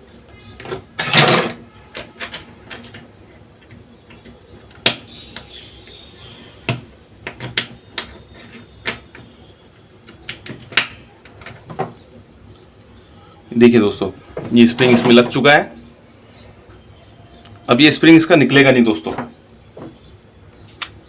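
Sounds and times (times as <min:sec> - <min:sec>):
plastic parts clicking and tapping: 0:00.6 - 0:05.5, 0:06.7 - 0:09.4, 0:10.0 - 0:12.0.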